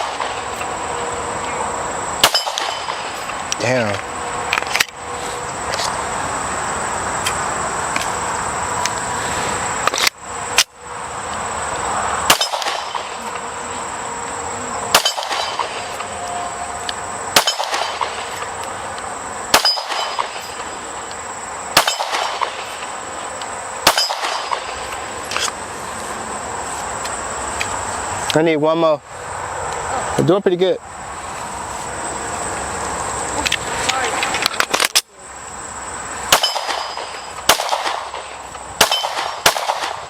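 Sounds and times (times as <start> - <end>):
pistol shots: 0.0 - 0.5, 2.2 - 3.2, 12.3 - 13.2, 14.9 - 15.9, 17.3 - 18.4, 19.5 - 20.7, 21.7 - 22.8, 23.8 - 24.8, 36.3 - 40.0
steel target clanging: 2.2 - 3.2, 12.3 - 13.1, 14.9 - 16.1, 17.4 - 18.3, 19.5 - 20.7, 23.8 - 24.8, 36.3 - 37.4.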